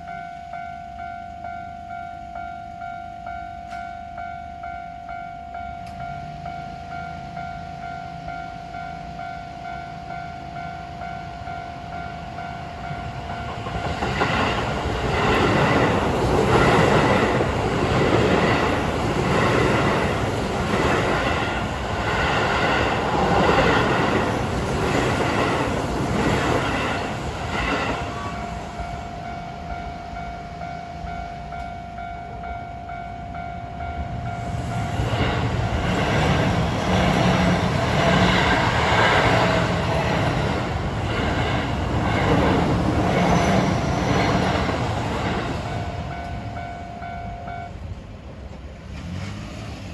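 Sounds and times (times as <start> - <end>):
level crossing warning bell: 0.0 - 48.3
train wheels knocking over rail joints: 13.4 - 28.7.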